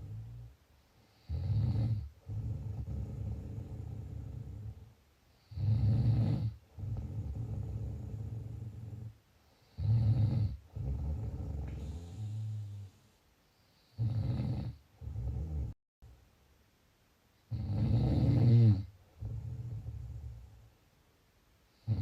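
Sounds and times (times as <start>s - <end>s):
person snoring: 1.1s - 13.0s, 13.9s - 15.8s, 17.5s - 20.4s, 21.8s - 22.0s.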